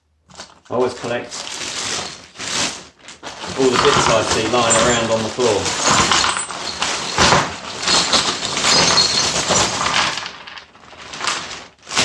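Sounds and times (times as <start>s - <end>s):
metal scraps clattering onto bench: 3.2s - 10.6s.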